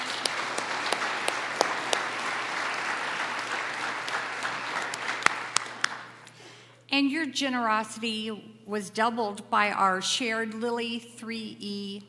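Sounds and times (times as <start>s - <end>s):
audience applauding: 0.0s - 6.3s.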